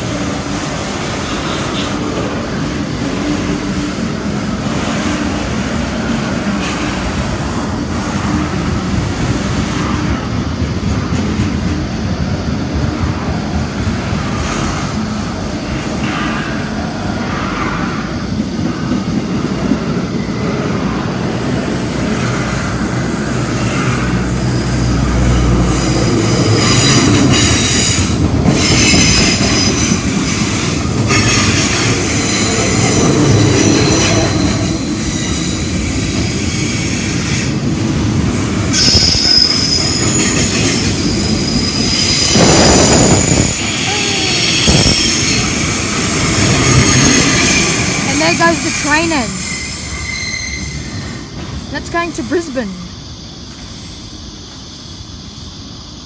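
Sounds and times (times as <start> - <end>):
freight train rolling past: 0.0 - 56.0
high-pitched wheel squeal: 38.7 - 45.9, 46.6 - 51.3.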